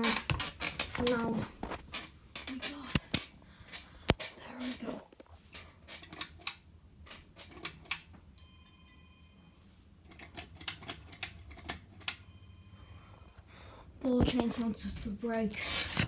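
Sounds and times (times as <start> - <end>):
sharp clicks and rattles: 0.0 - 8.1
ceiling fan humming: 0.0 - 16.0.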